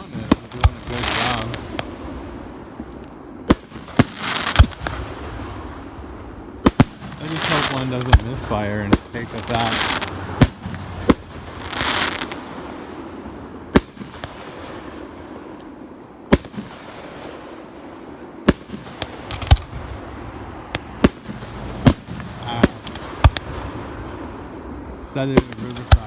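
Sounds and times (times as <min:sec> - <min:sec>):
fireworks bursting with sharp bangs: 0:00.0 - 0:26.0
fireworks hissing crackle: 0:00.0 - 0:26.0.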